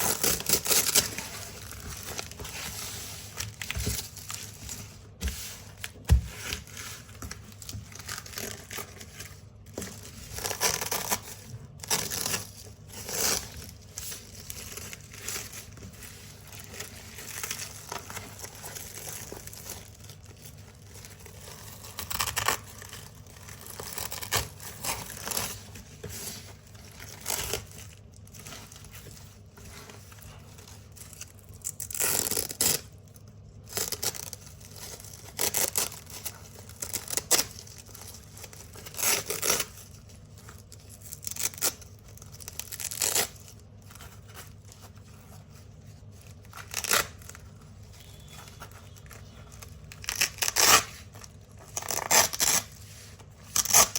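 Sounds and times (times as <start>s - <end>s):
velcro tape ripping: 31.6s - 32.9s, 38.8s - 39.7s, 41.2s - 43.5s, 46.5s - 47.4s, 48.0s - 53.9s.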